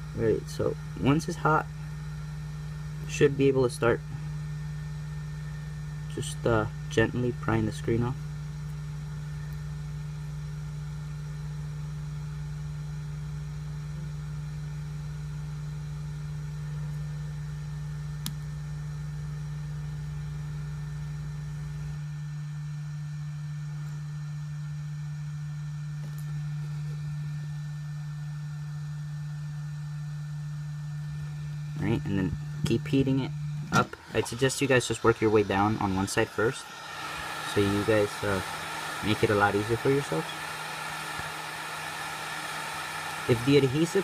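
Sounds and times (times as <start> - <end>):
heat gun motor hum: 28.9 - 44.0.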